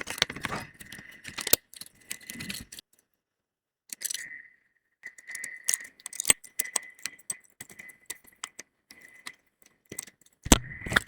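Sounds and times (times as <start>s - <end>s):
metal tools clicking: 5.2s - 11.0s.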